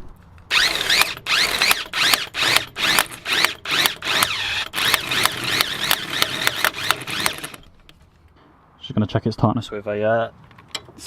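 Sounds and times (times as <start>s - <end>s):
impact gun motor whine: 0.5s - 7.6s
impact gun hammering rattle: 0.6s - 7.7s.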